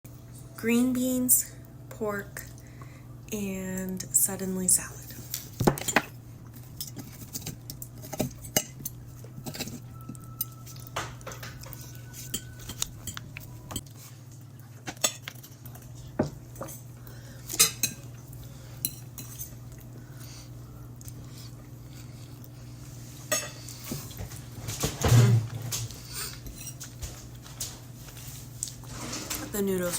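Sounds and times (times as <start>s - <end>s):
steady low hum: 0.1s - 29.9s
cutlery clinking on plate: 6.8s - 13.9s.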